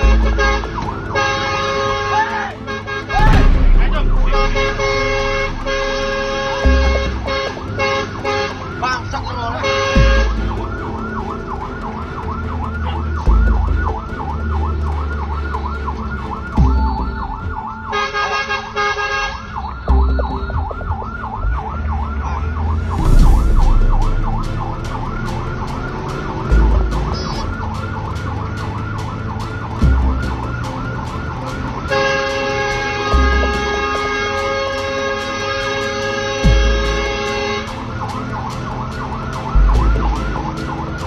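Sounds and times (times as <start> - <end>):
fire engine siren yelping: 0.0 - 41.0
horn blaring: 0.0 - 41.0
low rumble: 3.2 - 7.8, 16.5 - 17.7, 19.6 - 30.8.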